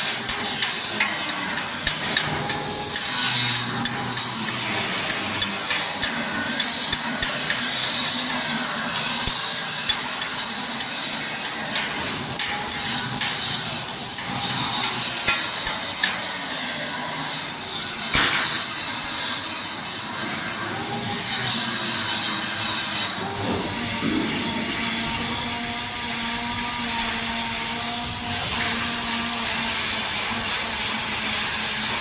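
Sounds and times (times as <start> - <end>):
welding crackling hiss: 0.0 - 32.0
sharp metal knocks: 18.1 - 18.9.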